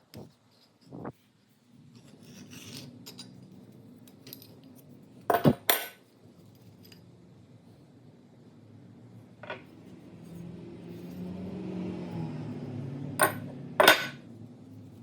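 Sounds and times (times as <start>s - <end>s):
metal clinks and scrapes: 1.9s - 7.1s, 13.2s - 14.2s.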